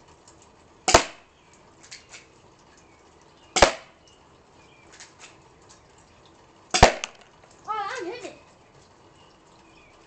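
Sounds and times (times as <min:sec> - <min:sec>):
airsoft pistol shots: 0:00.9 - 0:01.2, 0:03.6 - 0:03.9, 0:06.8 - 0:07.2.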